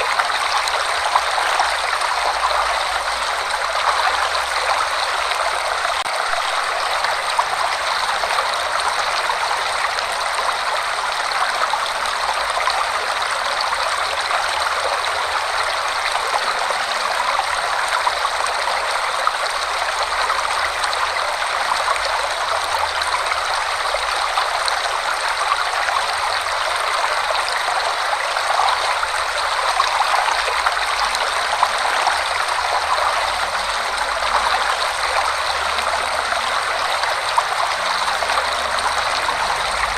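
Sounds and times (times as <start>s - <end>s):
waterfall roaring: 0.0s - 8.8s.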